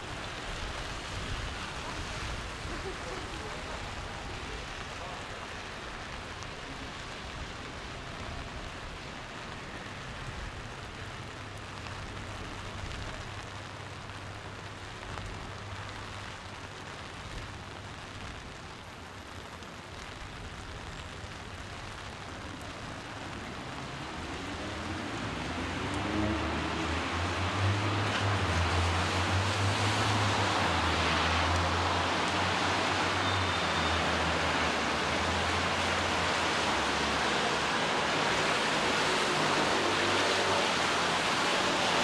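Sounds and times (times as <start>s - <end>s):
steady rain falling: 0.0s - 42.0s
vehicle engine approaching: 22.5s - 42.0s.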